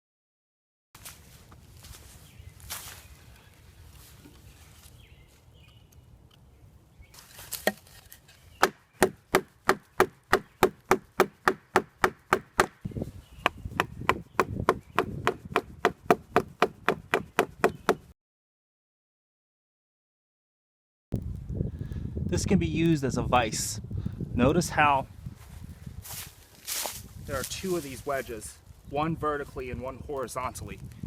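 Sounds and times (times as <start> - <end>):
hammer knocking wooden wedge: 8.6 - 18.1.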